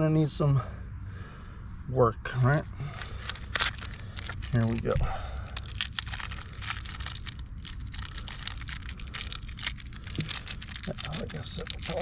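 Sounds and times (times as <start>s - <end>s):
light clicks and crinkling: 2.9s - 12.0s.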